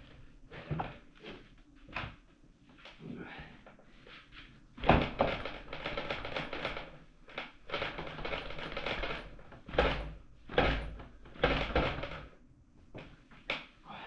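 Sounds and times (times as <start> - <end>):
scooter rattling and clattering: 4.8 - 12.3.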